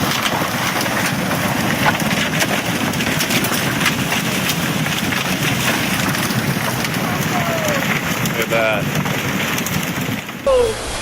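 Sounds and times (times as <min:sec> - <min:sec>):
crackles and pops: 0:00.0 - 0:10.5
floodwater rushing: 0:10.4 - 0:11.0.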